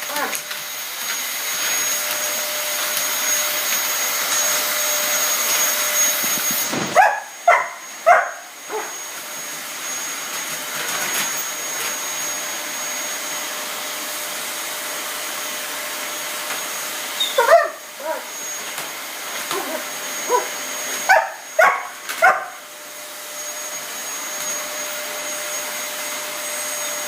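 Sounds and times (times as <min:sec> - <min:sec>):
vacuum cleaner running: 0:00.0 - 0:27.0
dog barking: 0:06.9 - 0:09.0, 0:17.2 - 0:18.3, 0:19.5 - 0:22.6.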